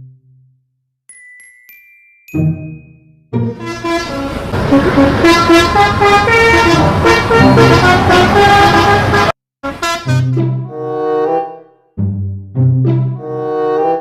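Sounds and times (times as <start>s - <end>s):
musical vehicle horn: 3.4s - 11.9s, 13.0s - 14.0s
lower horn tone: 3.5s - 11.7s.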